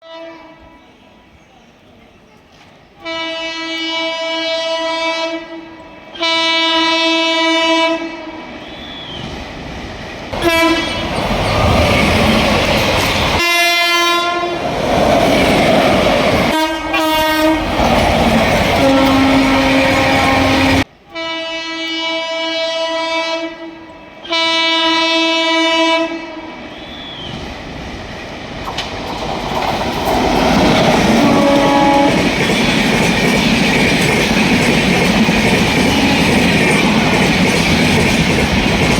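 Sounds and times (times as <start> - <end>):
locomotive horn blasts: 0.0 - 0.9, 3.0 - 8.7, 10.4 - 11.2, 13.3 - 14.6, 16.4 - 17.7, 18.7 - 27.0, 31.1 - 32.3
train passing with rumble: 5.7 - 21.3, 23.9 - 38.9.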